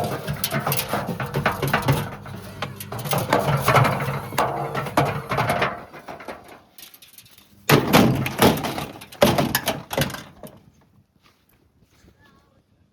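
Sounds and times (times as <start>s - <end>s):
washing machine knocking and clattering: 0.0s - 6.8s, 7.7s - 10.6s.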